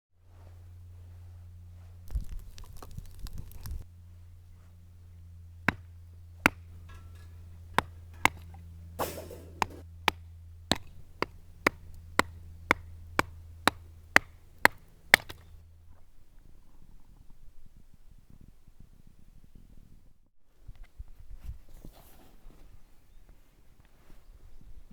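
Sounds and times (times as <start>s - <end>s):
steady low hum: 0.2s - 15.9s
sharp knocks: 5.7s - 15.5s.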